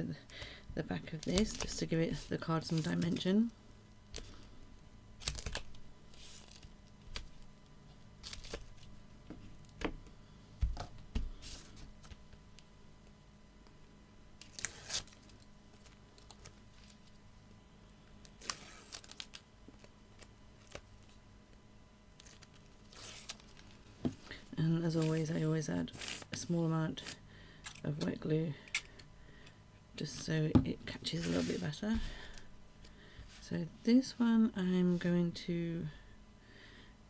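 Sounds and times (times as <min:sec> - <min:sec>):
paper card crinkling: 0:01.1 - 0:03.2, 0:18.3 - 0:21.2
foam tape tearing and peeling: 0:14.4 - 0:15.3, 0:18.4 - 0:19.4, 0:22.2 - 0:23.7.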